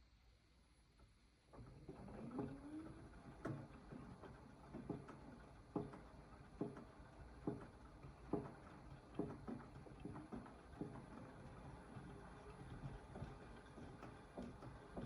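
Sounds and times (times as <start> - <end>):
washing machine knocking: 4.3 - 12.0, 12.6 - 15.0.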